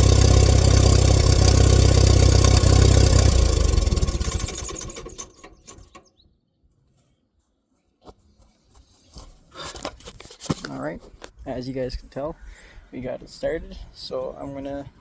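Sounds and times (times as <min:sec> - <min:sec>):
tractor engine winding down: 0:00.0 - 0:06.1.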